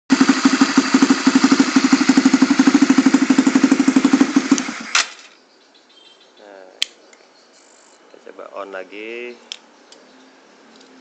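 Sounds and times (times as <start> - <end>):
motorcycle engine running: 0.1 - 5.0
engine stopping click: 0.1 - 5.4.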